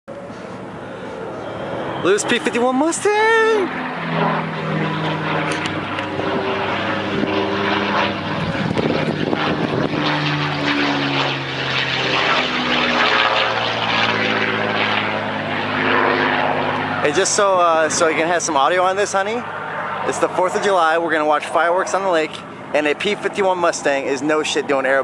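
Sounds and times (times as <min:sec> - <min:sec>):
propeller plane engine passing: 0:00.1 - 0:25.0.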